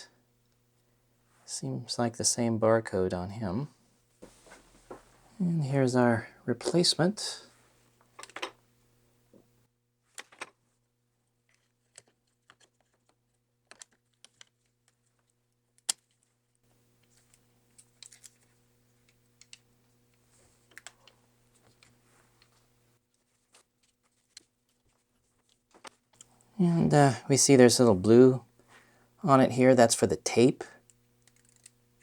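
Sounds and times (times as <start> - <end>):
faint steady hum: 0.0 - 9.7, 16.7 - 25.5, 26.2 - 32.0
light clicks of plastic parts: 11.5 - 16.2, 17.0 - 22.6.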